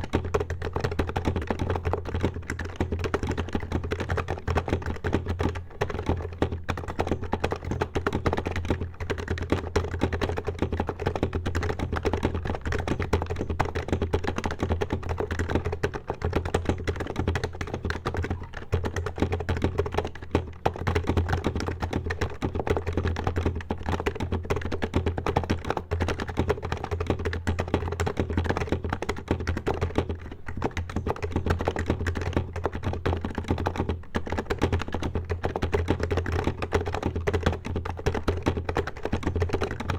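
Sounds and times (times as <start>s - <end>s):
fast typing on keyboard: 0.0s - 39.9s.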